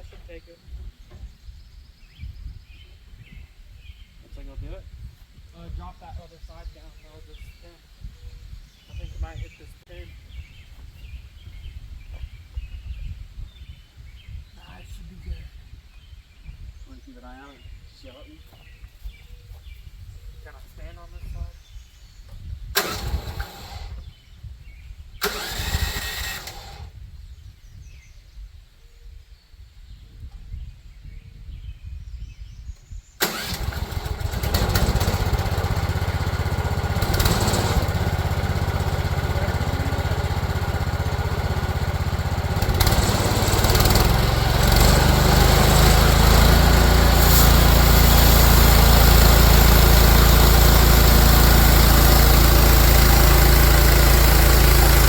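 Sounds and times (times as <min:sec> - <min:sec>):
sawmill engine running: 0:22.8 - 0:24.0, 0:25.2 - 0:26.9, 0:33.2 - 0:55.0
short noises: 0:22.8 - 0:24.0, 0:25.2 - 0:26.9, 0:33.2 - 0:55.0.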